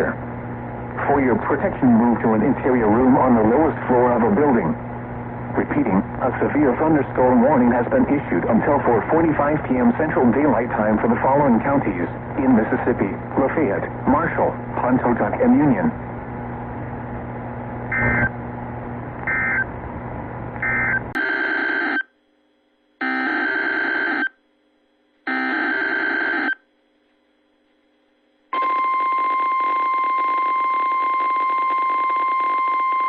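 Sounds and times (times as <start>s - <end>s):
radio hiss: 5.5s - 16.0s
data tone bursts: 17.9s - 18.3s, 19.3s - 19.7s
steady warning alarm tone: 17.9s - 18.3s, 19.3s - 19.7s, 20.6s - 22.1s, 23.0s - 24.4s, 25.3s - 26.6s, 28.5s - 33.0s.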